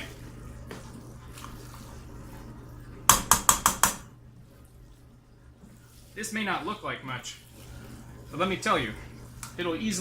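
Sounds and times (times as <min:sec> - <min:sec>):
metal utensil knocking on pot: 0:03.1 - 0:04.0.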